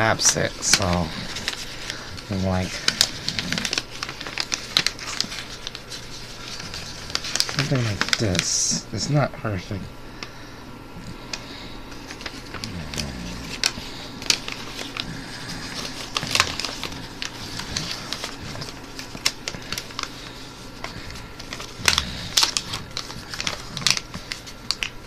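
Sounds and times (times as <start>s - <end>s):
paper rustling and crackling: 0.0s - 9.1s, 11.0s - 25.0s.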